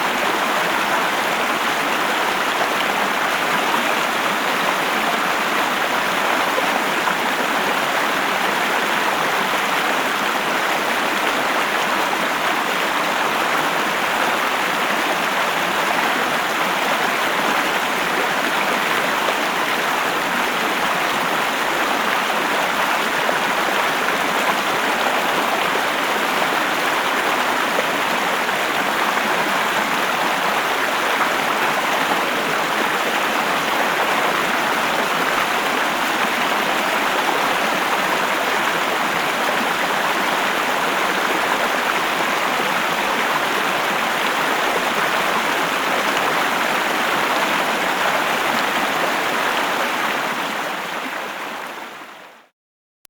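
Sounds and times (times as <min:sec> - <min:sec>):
river water flowing and splashing: 0:00.0 - 0:52.4.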